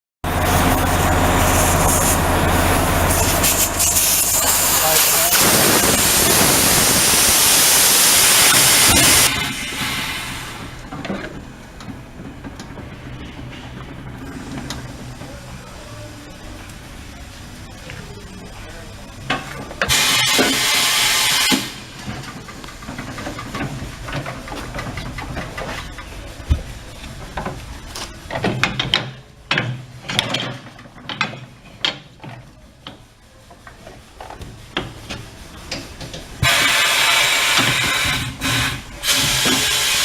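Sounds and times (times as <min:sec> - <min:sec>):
compressed air hissing: 0:01.0 - 0:10.8, 0:19.9 - 0:22.0, 0:36.4 - 0:40.0.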